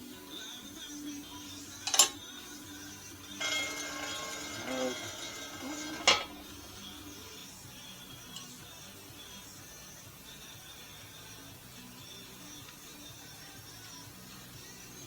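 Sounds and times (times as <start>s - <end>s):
metal rattling and scraping: 1.8s - 2.2s, 3.3s - 7.3s
sharp metal clanks: 1.8s - 2.2s, 3.3s - 7.1s.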